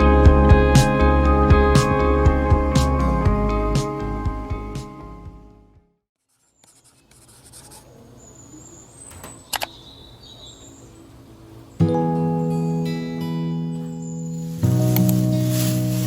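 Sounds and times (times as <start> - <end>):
guitar background music: 0.0 - 5.8, 11.8 - 16.0
soft scratching and rustling: 6.3 - 8.1
sharp clicks: 9.1 - 9.8.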